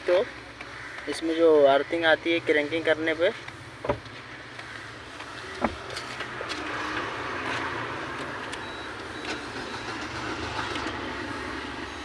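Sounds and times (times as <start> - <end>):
starter cranking engine: 9.2 - 11.9.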